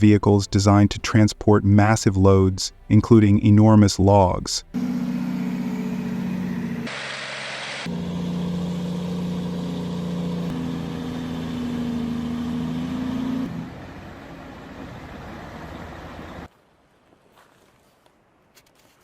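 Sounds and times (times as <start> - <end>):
truck engine running under load: 4.8 - 6.9, 7.8 - 16.5.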